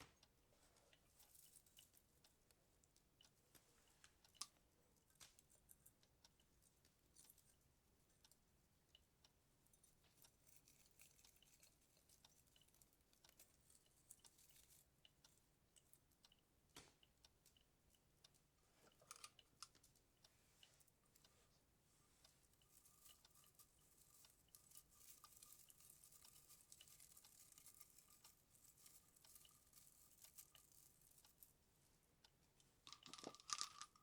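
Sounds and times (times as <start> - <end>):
light rustle: 18.7 - 31.6
baubles clicking and tapping: 32.8 - 34.0.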